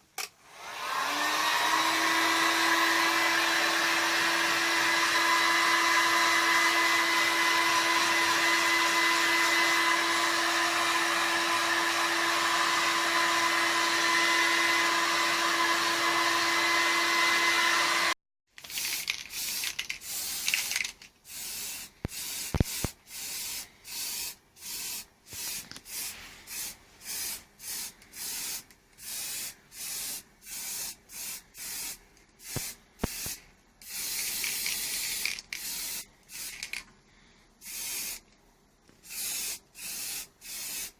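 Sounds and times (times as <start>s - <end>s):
whirring power tool: 0.4s - 18.2s
hand sanding strokes: 25.8s - 28.1s.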